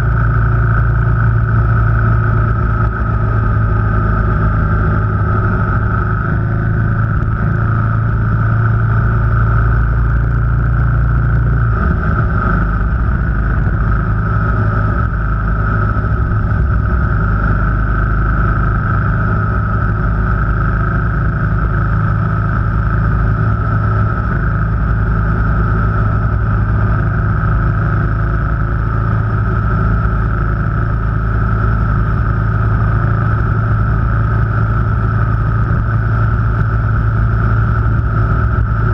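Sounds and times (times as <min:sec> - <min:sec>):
car engine and road noise: 0:00.0 - 0:38.9.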